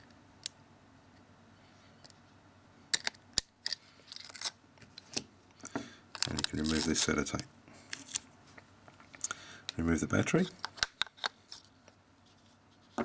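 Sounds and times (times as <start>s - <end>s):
smartphone parts clicking: 3.0s - 4.5s.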